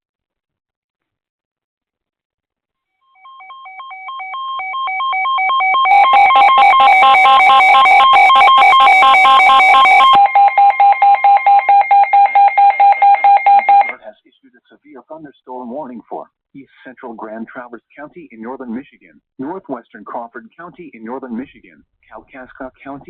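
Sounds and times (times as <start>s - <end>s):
rapid electronic alarm beeping: 3.2s - 14.0s
dense alarm sound: 3.6s - 12.0s.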